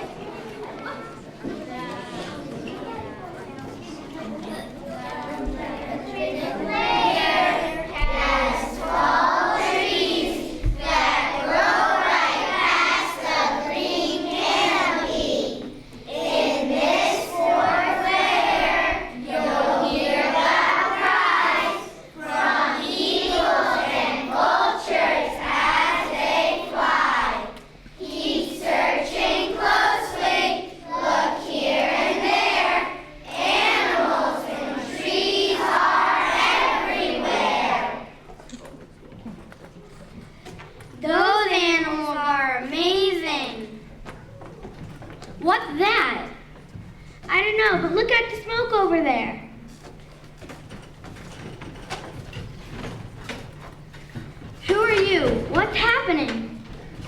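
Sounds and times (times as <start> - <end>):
children singing: 5.1 - 38.2.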